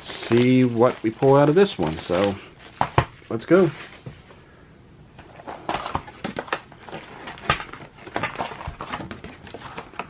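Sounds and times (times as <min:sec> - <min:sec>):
plastic shrink-wrap crinkling: 0:00.0 - 0:04.1.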